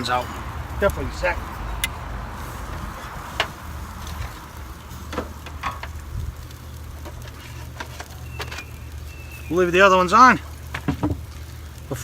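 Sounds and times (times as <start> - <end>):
metal tongs clicking on grill grate: 1.8 - 2.0.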